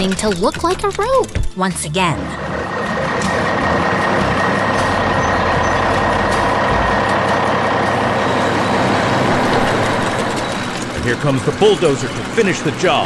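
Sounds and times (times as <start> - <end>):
heavy machine engine rumbling: 0.0 - 13.0.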